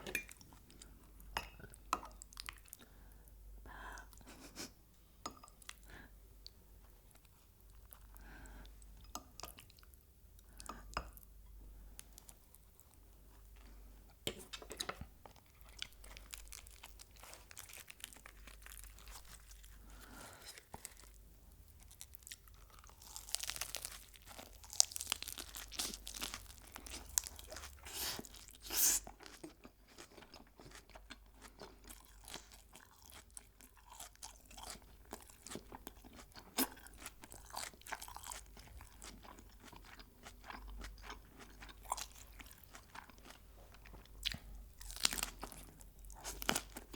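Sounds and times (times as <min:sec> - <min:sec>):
chewing crispy fried chicken: 0:15.3 - 0:46.9.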